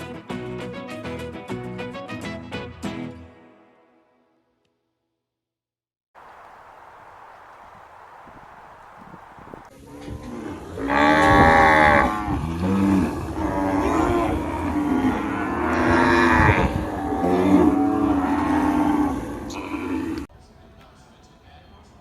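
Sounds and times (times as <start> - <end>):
cattle mooing: 9.4 - 20.3.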